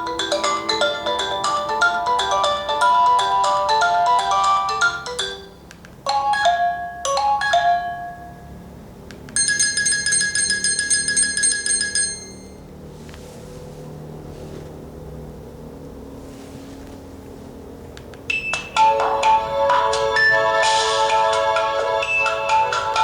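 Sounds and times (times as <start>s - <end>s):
phone ringtones: 0.0s - 8.6s, 9.3s - 12.6s, 18.3s - 21.0s.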